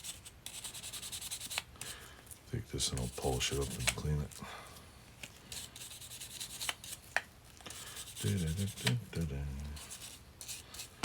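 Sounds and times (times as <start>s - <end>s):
scratchy scrubbing of metal: 0.0s - 1.6s, 2.8s - 4.0s, 5.5s - 7.0s, 7.7s - 9.0s, 9.7s - 11.0s.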